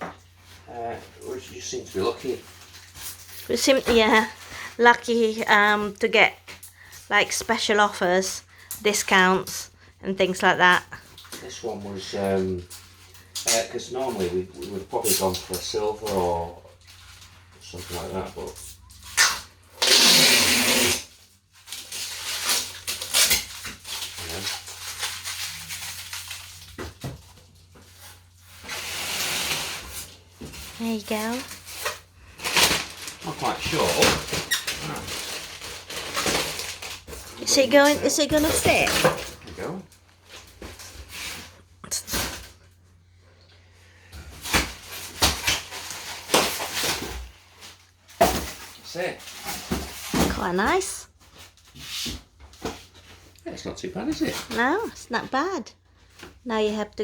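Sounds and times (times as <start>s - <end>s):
packing material rustling: 19.8s - 42.6s, 44.3s - 53.2s.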